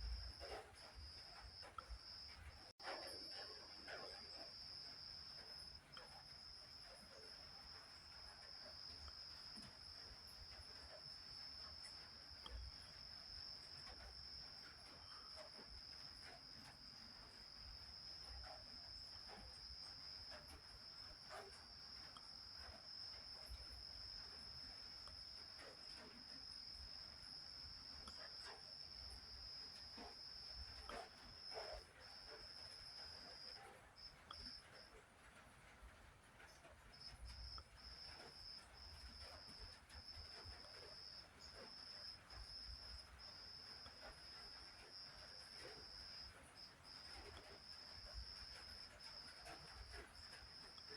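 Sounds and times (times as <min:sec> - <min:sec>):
cricket trilling: 0:36.8 - 0:50.9.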